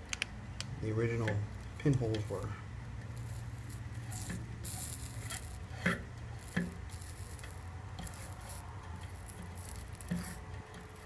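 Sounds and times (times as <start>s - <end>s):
soldering gun humming: 3.0s - 11.0s
bursts of hiss: 3.2s - 10.5s.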